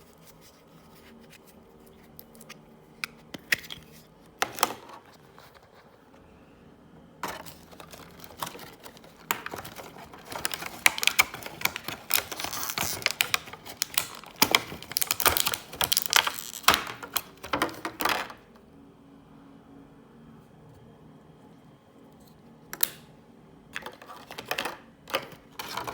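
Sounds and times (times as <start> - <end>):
plastic parts clicking and crinkling: 1.4 - 5.9, 7.2 - 18.6, 23.8 - 25.9.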